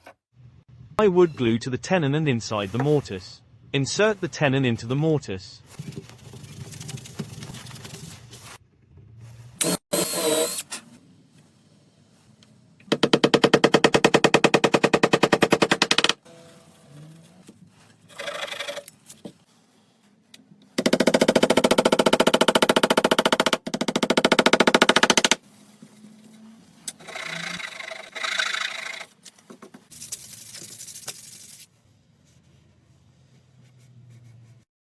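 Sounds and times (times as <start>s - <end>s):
power drill boring into wood: 9.6s - 10.6s.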